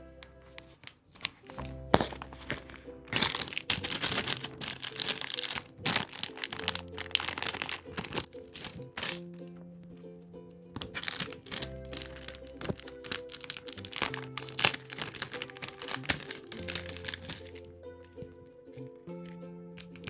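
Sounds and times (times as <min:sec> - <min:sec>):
soft background music: 0:00.0 - 0:20.0
paper crinkling and rustling: 0:00.5 - 0:09.2, 0:10.8 - 0:17.7, 0:19.8 - 0:20.0.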